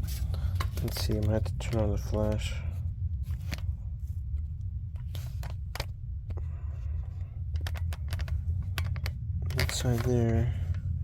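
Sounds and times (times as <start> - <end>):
steady low hum: 0.0 - 11.0
handling clicks and taps: 7.5 - 10.8.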